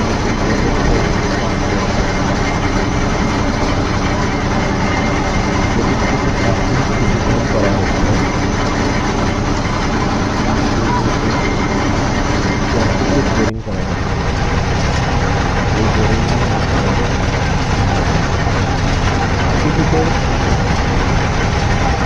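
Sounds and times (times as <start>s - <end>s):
heavy machinery engine running: 0.0s - 22.0s.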